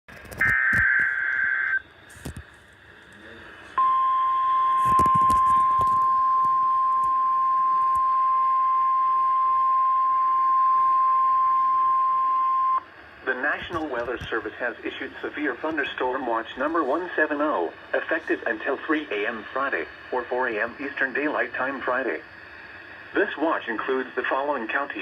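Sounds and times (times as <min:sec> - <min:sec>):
radio static clicks: 0:00.1 - 0:02.8, 0:04.8 - 0:07.2, 0:13.3 - 0:17.3
data tone burst: 0:00.4 - 0:01.8, 0:03.8 - 0:13.7
steady warning alarm tone: 0:03.8 - 0:12.9.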